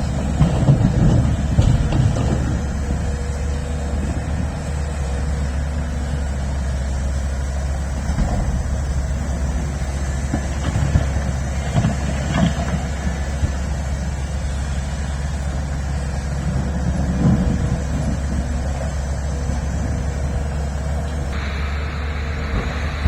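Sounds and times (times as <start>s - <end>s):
machine knocks and clanks: 0.0s - 4.8s, 8.0s - 13.7s, 16.5s - 18.9s
excavator diesel engine droning: 0.0s - 23.0s.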